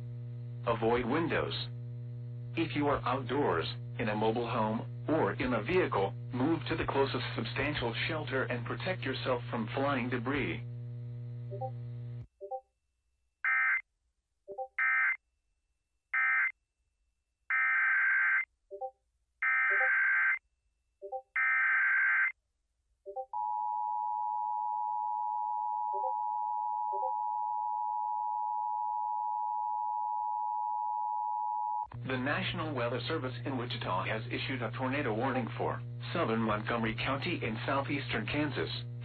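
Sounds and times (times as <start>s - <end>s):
warning alarm tone: 13.4s - 13.8s, 14.5s - 15.2s, 16.2s - 16.5s, 17.5s - 20.4s, 21.0s - 22.4s, 23.1s - 31.9s.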